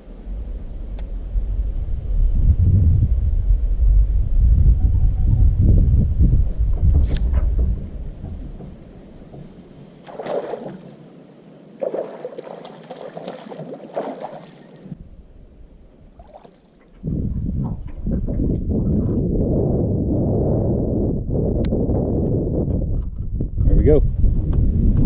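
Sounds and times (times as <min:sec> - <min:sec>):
boat engine rumble: 0:00.0 - 0:25.0
water sounds: 0:06.5 - 0:19.8.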